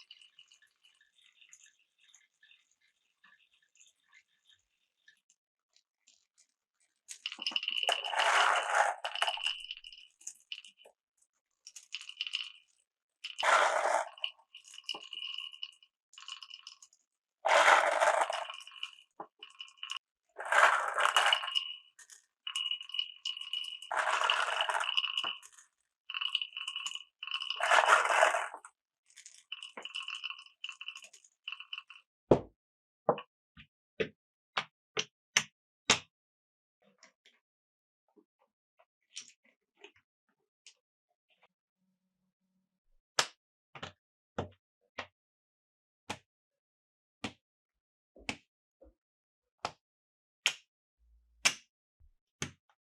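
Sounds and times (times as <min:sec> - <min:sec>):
marbles clicking: 0:07.1 - 0:10.8, 0:13.3 - 0:16.9, 0:17.5 - 0:32.0
marbles rolling on wooden track: 0:07.1 - 0:10.8, 0:11.7 - 0:32.0.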